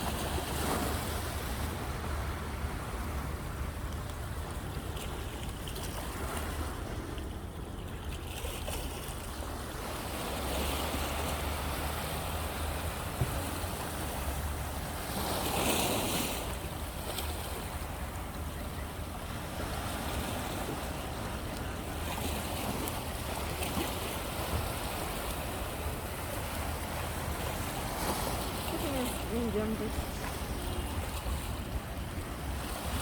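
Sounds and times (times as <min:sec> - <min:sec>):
sea waves washing onto shore: 0:09.6 - 0:33.0.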